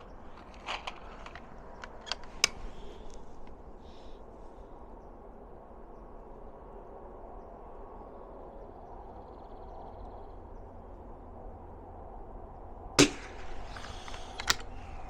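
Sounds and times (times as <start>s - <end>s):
faint outdoor background: 0.0s - 15.0s
rifle shot crack: 0.1s - 3.5s, 13.0s - 15.0s.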